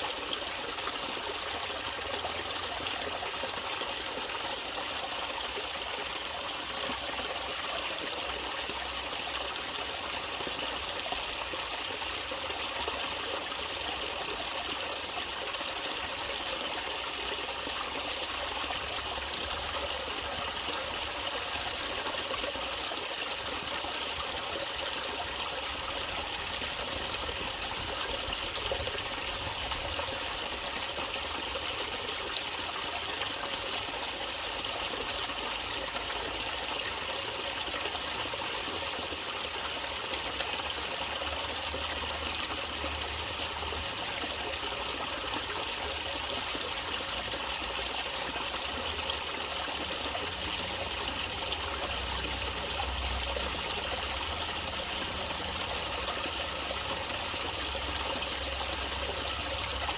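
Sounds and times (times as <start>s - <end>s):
stream water running over rocks: 0.0s - 59.9s.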